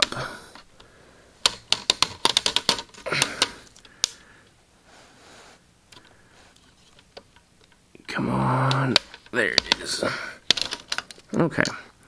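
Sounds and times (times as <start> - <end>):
plastic clips clicking loose: 0.0 - 4.2, 8.6 - 11.8.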